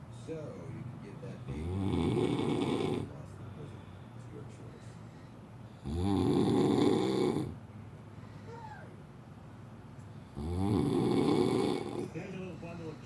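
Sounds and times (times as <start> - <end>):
quiet breathing: 1.0 - 6.0, 7.0 - 8.8, 11.5 - 13.0
man snoring: 1.5 - 3.1, 5.8 - 7.6, 10.2 - 12.2.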